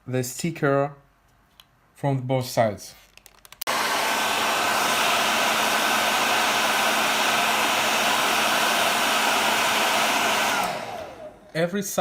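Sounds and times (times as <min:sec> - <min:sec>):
hair dryer blowing air: 0:03.7 - 0:11.6
hair dryer motor whine: 0:03.7 - 0:11.6.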